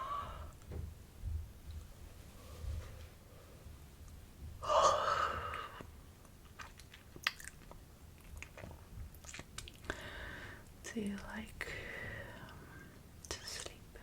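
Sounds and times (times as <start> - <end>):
person yawning: 4.6 - 5.8.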